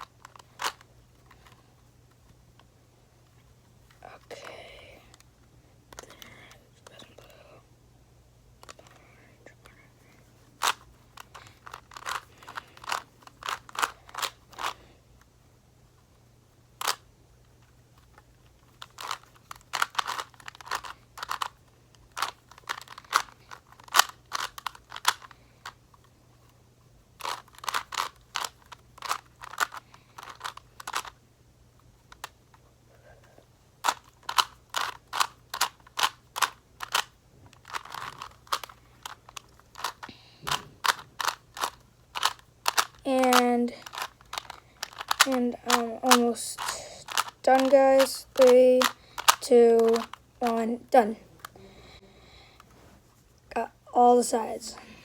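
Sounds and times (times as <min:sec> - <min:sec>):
puzzle cube layers clicking: 0:18.8 - 0:25.3, 0:27.2 - 0:31.2, 0:33.8 - 0:51.5.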